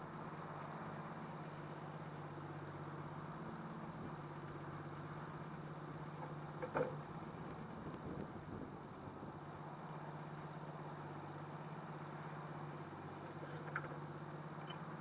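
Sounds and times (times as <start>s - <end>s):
car engine idling: 0.0s - 15.0s
short engine knock: 6.2s - 7.0s.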